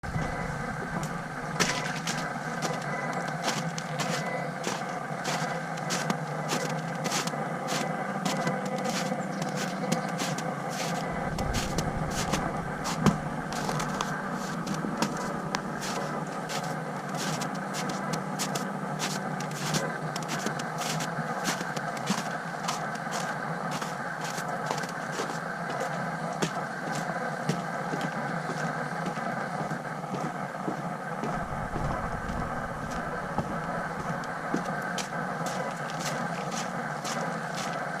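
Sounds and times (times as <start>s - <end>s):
gimbal motor whine: 0.0s - 2.8s, 11.0s - 16.4s, 31.2s - 35.0s.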